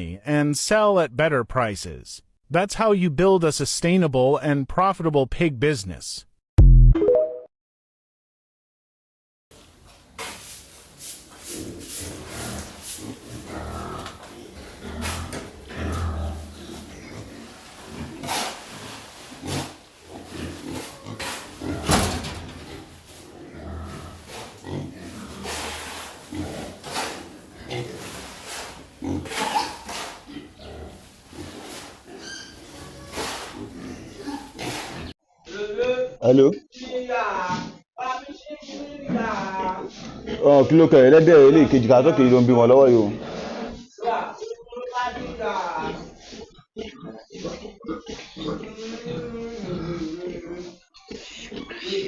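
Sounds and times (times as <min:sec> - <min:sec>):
pigs grunting: 0:10.7 - 0:35.2, 0:37.4 - 0:37.8, 0:38.6 - 0:40.8, 0:41.4 - 0:44.0, 0:45.0 - 0:52.0
pig squealing: 0:11.5 - 0:35.2, 0:38.6 - 0:40.5, 0:43.2 - 0:44.0, 0:45.0 - 0:52.0.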